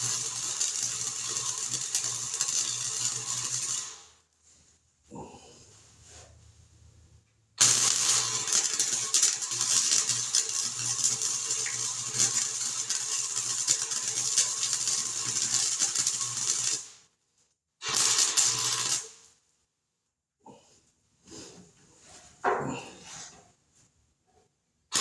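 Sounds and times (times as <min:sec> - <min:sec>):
arc welding crackling: 0:00.0 - 0:04.1, 0:07.6 - 0:17.0, 0:17.8 - 0:19.2
low welder buzz: 0:00.0 - 0:04.2, 0:07.6 - 0:17.0, 0:17.8 - 0:19.3.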